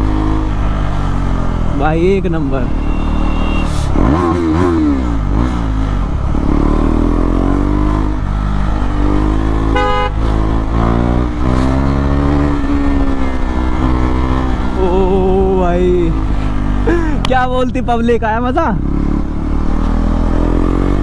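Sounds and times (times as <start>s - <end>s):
motorcycle engine revving: 0.0s - 21.0s
vehicle horn: 2.7s - 4.2s, 9.6s - 10.4s.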